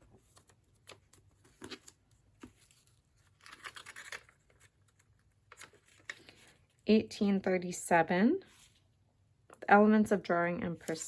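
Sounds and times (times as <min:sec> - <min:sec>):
book pages rustling: 0:00.0 - 0:06.8.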